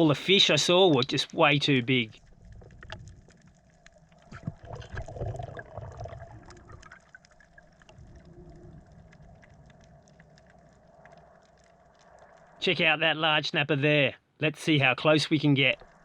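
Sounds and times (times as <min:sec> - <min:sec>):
faint underwater clicks and crackle: 0:00.0 - 0:16.0
muffled underwater bubbling: 0:02.0 - 0:11.4.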